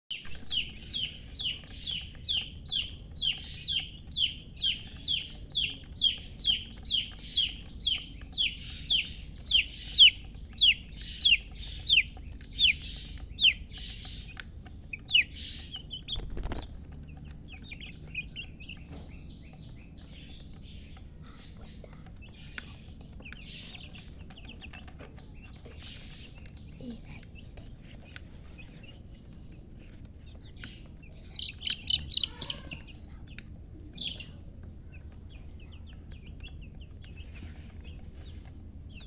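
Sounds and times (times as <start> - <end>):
chick peeping: 0.1 - 39.0.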